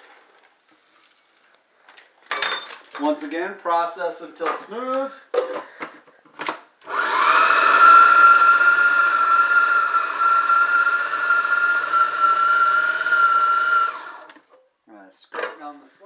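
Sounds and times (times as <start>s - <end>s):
food processor motor whining: 6.8s - 14.4s.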